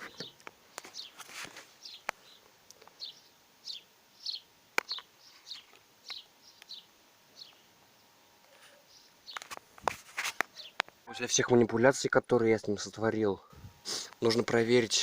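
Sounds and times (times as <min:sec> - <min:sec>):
small bird chirping: 0:00.1 - 0:01.2, 0:01.8 - 0:09.5, 0:10.5 - 0:11.4.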